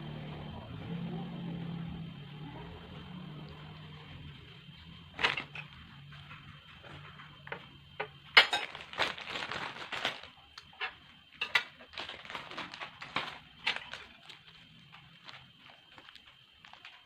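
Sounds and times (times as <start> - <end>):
crinkly rustling: 5.2 - 7.3, 8.4 - 17.0
tableware clicks and clinks: 7.5 - 8.8, 10.8 - 11.8.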